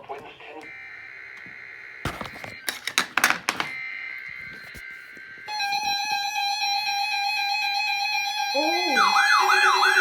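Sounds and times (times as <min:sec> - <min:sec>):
steady warning alarm tone: 0:03.8 - 0:10.0.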